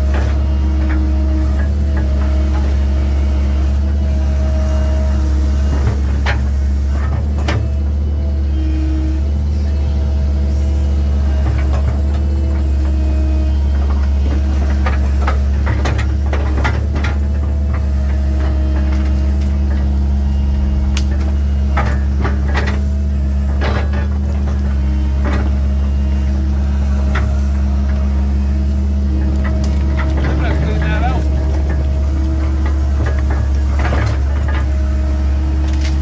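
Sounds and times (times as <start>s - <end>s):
excavator diesel engine running: 0.0s - 36.0s
metal knocks and clanks: 26.9s - 34.9s.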